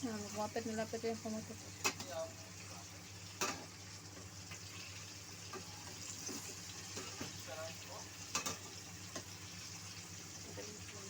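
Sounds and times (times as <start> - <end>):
tomatoes hissing in a pan: 0.0 - 11.0.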